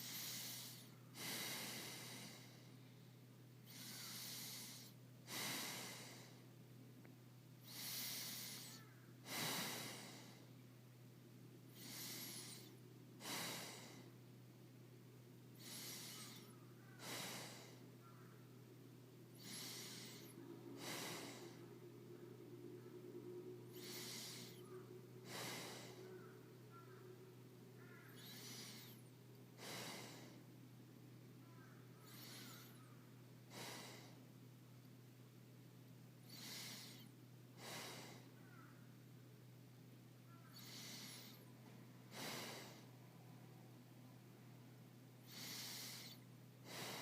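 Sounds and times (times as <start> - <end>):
person breathing slowly: 0.0 - 6.5, 7.6 - 10.6, 11.7 - 14.2, 15.6 - 18.5, 19.3 - 27.1, 27.7 - 30.6, 32.0 - 34.3, 36.2 - 38.4, 40.5 - 43.0, 45.2 - 47.0.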